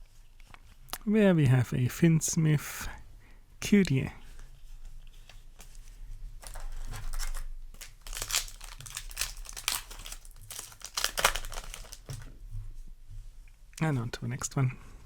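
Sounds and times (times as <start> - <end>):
foil wrapper crinkling and tearing: 6.4 - 12.3.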